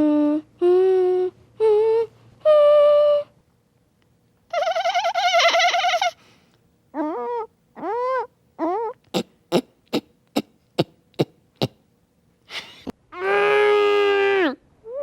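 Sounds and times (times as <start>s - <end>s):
person humming: 0.0s - 3.4s, 8.6s - 11.8s.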